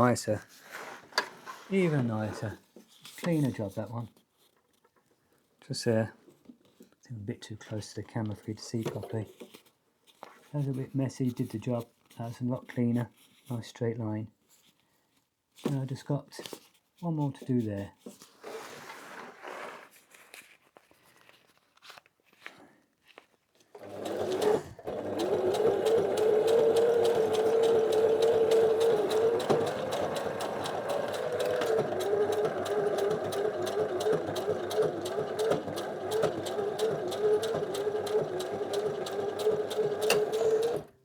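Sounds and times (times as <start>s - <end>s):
sewing machine stitching: 23.7s - 41.0s.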